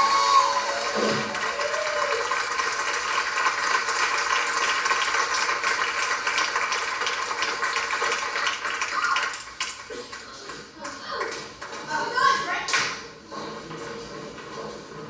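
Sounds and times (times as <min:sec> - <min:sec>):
audience applauding: 0:00.0 - 0:11.7.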